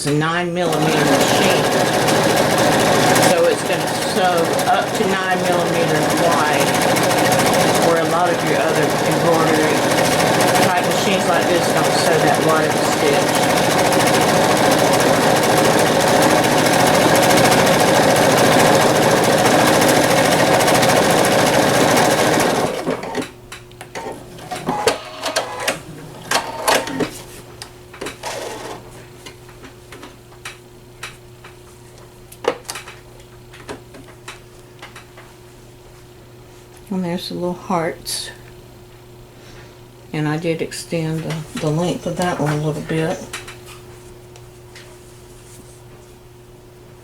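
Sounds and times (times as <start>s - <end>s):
sewing machine stitching: 0.6s - 23.3s, 23.9s - 27.1s, 28.2s - 28.8s.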